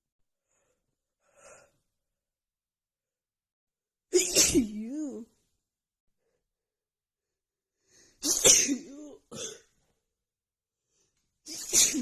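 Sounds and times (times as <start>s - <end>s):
woman sneezing: 4.2s - 4.8s, 8.2s - 9.7s, 11.5s - 12.0s.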